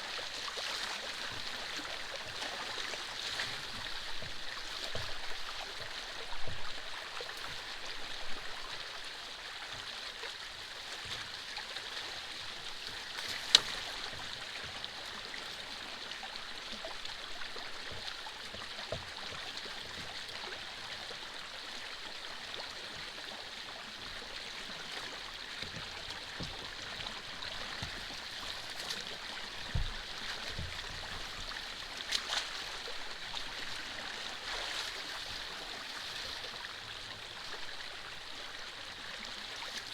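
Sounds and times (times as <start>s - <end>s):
water rushing in a canal: 0.0s - 39.9s.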